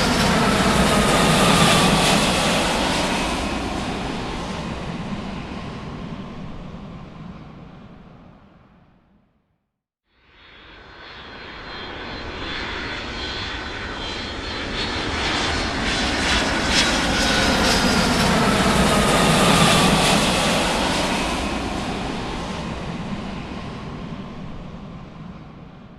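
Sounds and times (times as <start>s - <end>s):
aircraft flying past: 0.0s - 8.9s, 10.4s - 25.9s.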